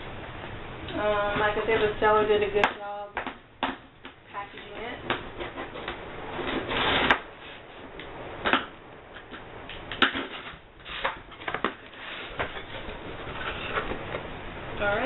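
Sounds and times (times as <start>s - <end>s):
packaging rustling and crinkling: 9.2s - 14.3s.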